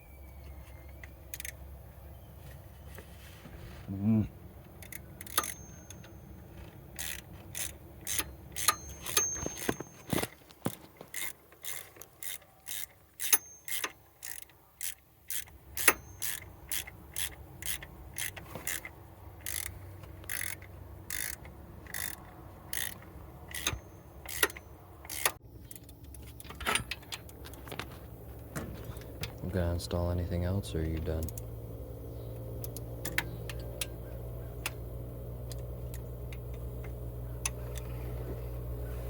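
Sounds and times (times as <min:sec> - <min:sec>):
ratchet wrench clicking: 0:01.3 - 0:01.6, 0:04.7 - 0:09.9, 0:11.1 - 0:26.2.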